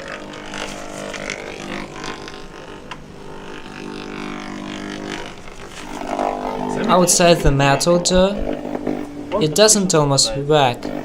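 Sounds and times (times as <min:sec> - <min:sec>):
electrical buzz: 0:00.0 - 0:11.0.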